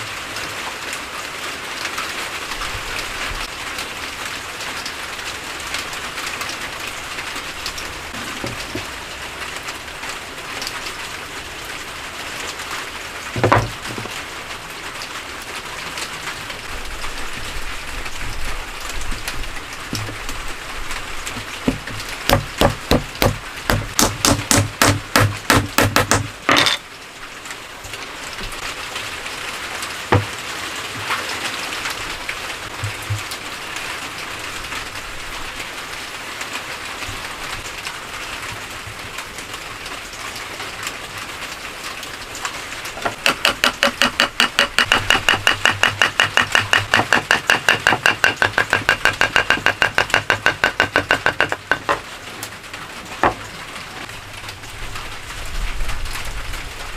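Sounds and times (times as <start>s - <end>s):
hand tool strokes on wood: 43.1s - 52.0s.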